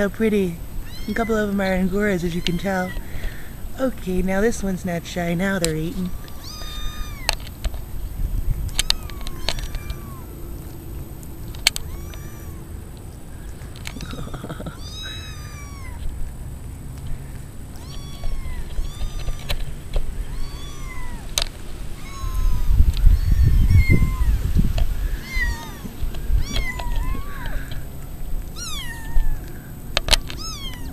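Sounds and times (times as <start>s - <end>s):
low rumbling noise: 0.0s - 30.9s
kittens mewing: 0.7s - 3.7s, 5.8s - 7.6s, 8.2s - 11.0s, 11.6s - 16.4s, 17.0s - 30.9s
sharp clicks: 10.9s - 12.3s.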